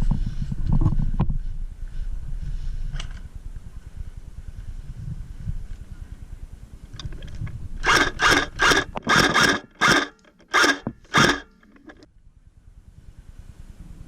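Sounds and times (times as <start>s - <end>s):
airsoft rifle bursts: 7.8s - 12.0s.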